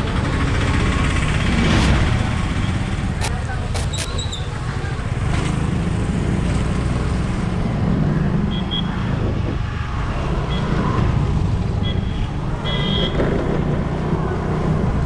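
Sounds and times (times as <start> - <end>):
short high-pitched beeps: 3.8 - 4.1.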